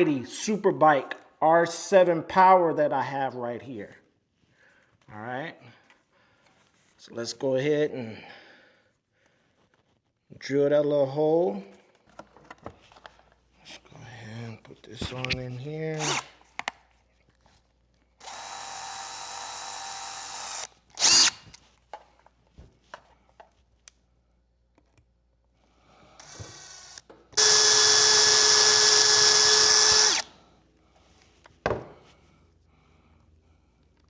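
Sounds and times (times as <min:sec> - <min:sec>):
power drill whining: 0:16.0 - 0:16.3, 0:18.2 - 0:21.4, 0:26.2 - 0:30.3.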